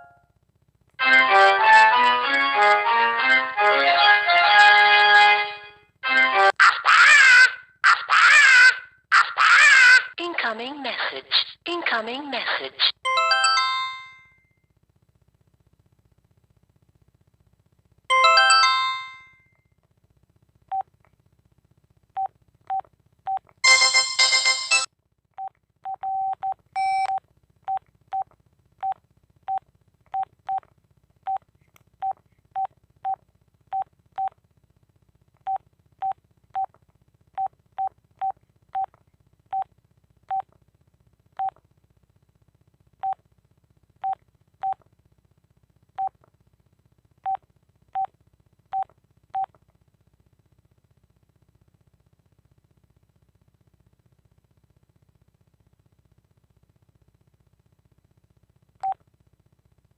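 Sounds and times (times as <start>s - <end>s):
phone keypad beeps: 25.9s - 27.2s.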